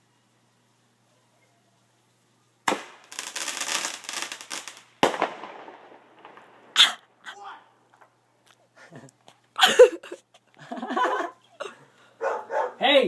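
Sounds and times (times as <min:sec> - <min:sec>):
firework crackle: 0:02.6 - 0:07.2
firework bangs: 0:02.7 - 0:07.2.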